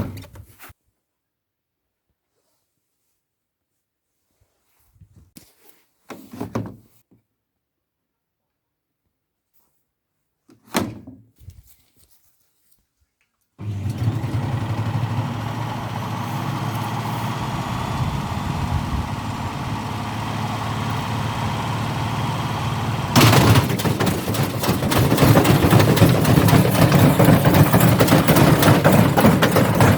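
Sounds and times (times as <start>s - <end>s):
washing machine running with knocking: 13.6s - 29.9s.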